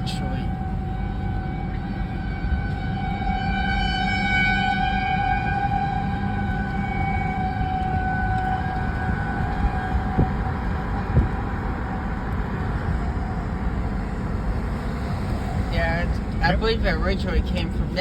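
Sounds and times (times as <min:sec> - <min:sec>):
steady low rumble: 0:00.0 - 0:18.0
tornado warning siren: 0:00.0 - 0:18.0.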